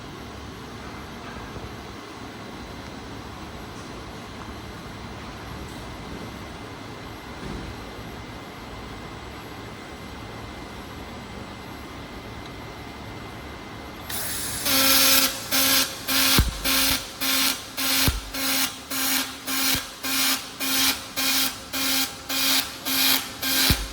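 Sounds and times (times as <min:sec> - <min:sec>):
welding arc buzzing in pulses: 0:14.0 - 0:23.9
hiss: 0:14.1 - 0:21.4.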